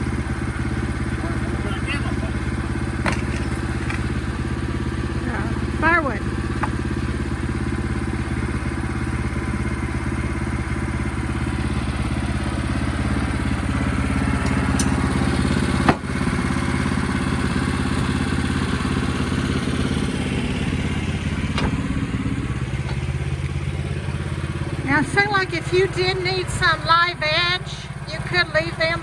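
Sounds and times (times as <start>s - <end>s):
sawmill engine running: 0.0s - 29.0s.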